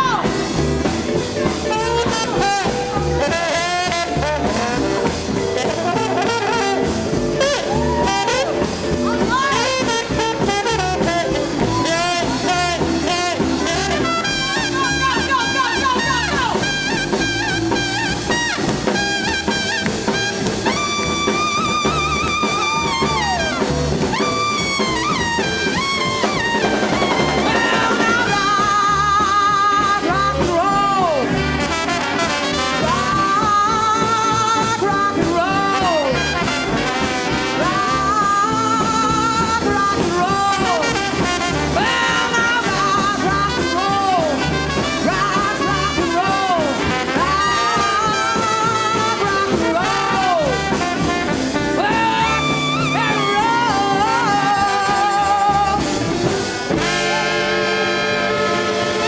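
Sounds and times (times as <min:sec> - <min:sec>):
drums: 0:00.0 - 0:59.0
horn section riffs: 0:00.0 - 0:59.0
upright bass: 0:00.0 - 0:59.0.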